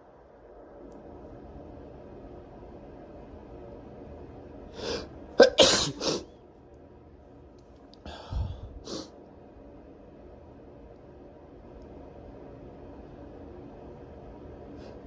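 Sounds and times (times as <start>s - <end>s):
breathing: 4.8s - 5.1s, 8.0s - 9.0s
person sneezing: 4.8s - 6.3s, 8.3s - 9.1s.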